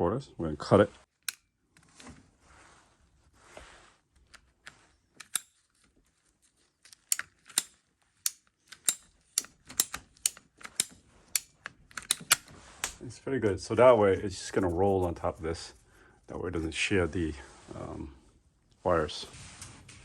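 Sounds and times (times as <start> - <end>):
sharp clicks: 5.2 - 5.5, 7.0 - 13.0
faint scraping: 12.4 - 20.0.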